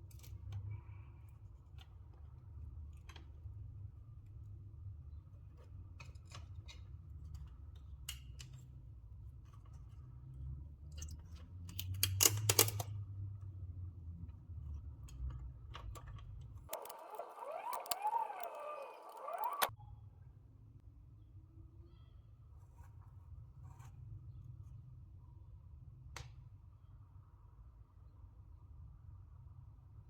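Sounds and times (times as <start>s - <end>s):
small clicks and taps: 15.1s - 19.7s.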